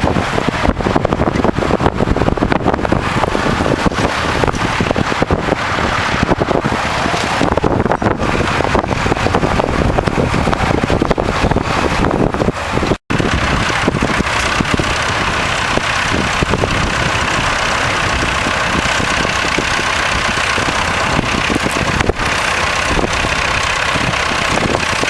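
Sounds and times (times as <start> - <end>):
tractor engine running: 0.0 - 25.0
wind buffeting microphone: 0.0 - 25.0.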